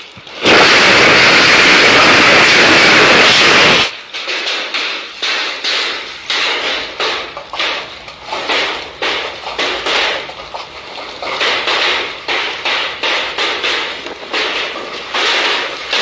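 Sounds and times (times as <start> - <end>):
hailstones striking hard surface: 0.0 - 16.0.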